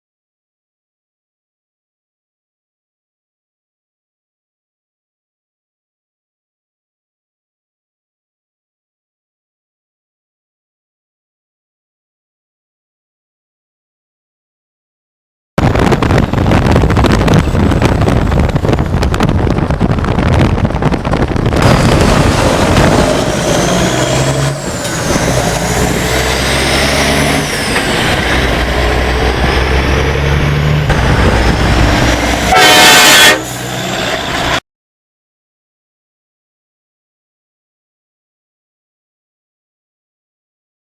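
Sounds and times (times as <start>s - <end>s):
truck engine drone: 15.6s - 34.6s
wind and road noise: 15.6s - 34.6s
truck air horn blast: 32.2s - 34.1s.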